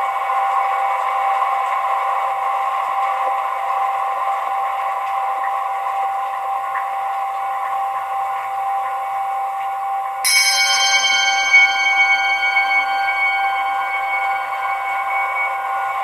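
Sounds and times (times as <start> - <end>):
ambient music drone: 0.0 - 16.0
bell ringing: 10.2 - 16.0.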